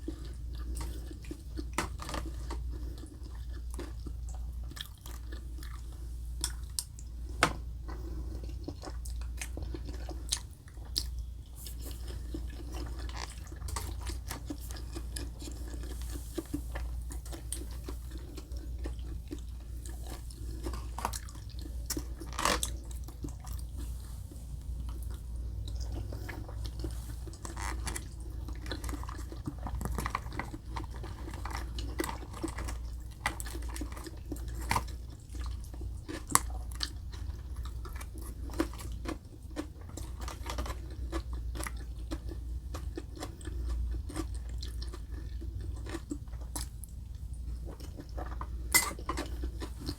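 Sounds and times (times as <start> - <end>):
person chewing food: 0.0 - 49.9.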